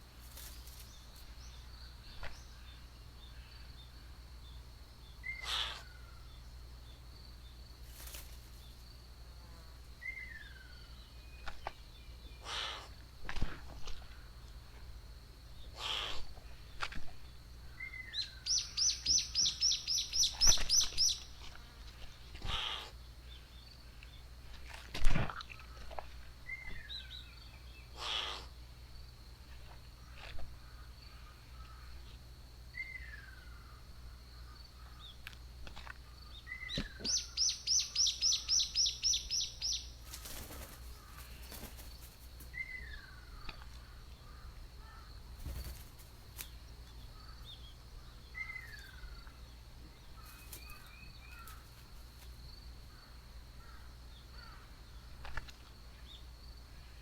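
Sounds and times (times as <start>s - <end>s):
bird whistling: 36.6s - 39.8s.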